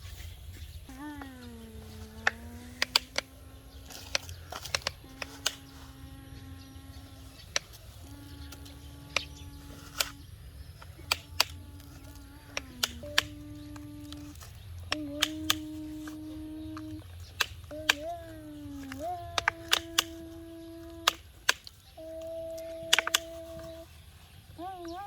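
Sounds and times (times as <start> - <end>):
low hum: 0.0 - 25.0
model excavator motor whining: 0.9 - 25.0
sharp clicks and knocks: 1.9 - 5.8, 22.8 - 23.5.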